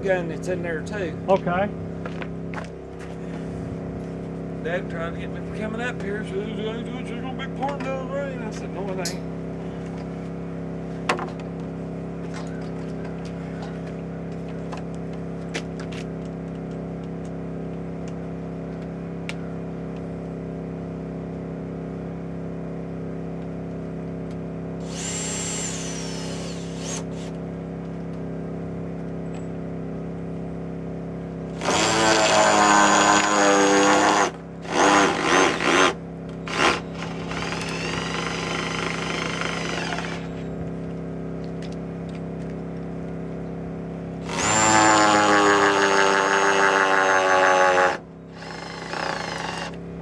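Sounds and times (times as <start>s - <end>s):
engine hum: 0.0s - 50.0s
power screw gun whining: 24.8s - 27.4s, 31.6s - 40.5s, 44.2s - 49.8s.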